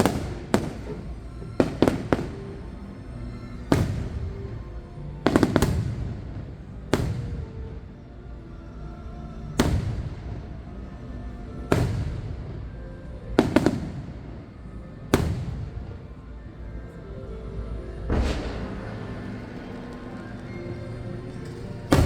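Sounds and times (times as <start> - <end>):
fireworks shells bursting: 17.9 - 22.0.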